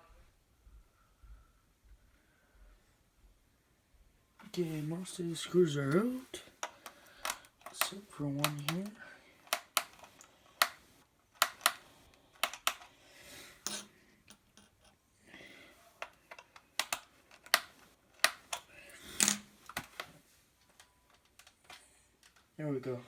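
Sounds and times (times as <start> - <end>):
screwdriver clicking on plastic case: 5.9 - 10.8, 11.4 - 12.9, 16.0 - 18.7, 19.7 - 20.1.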